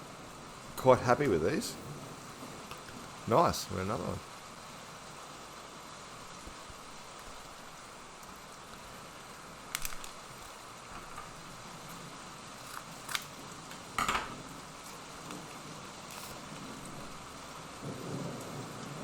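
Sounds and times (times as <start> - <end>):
steady background hiss: 0.0 - 19.0
trading cards rustling and clicking: 9.8 - 12.0, 12.6 - 14.2, 16.1 - 16.4.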